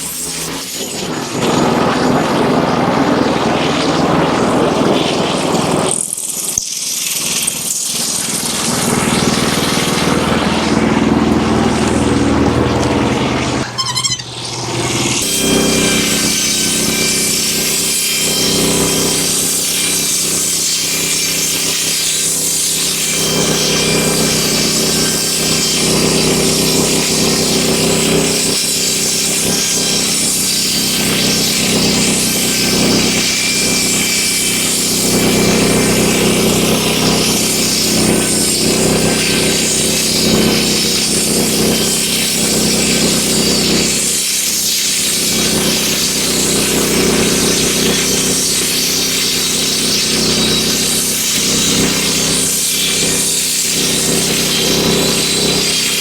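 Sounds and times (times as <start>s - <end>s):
engine droning: 0.0s - 6.1s, 7.3s - 44.4s
saw blade cutting wood: 0.0s - 56.0s.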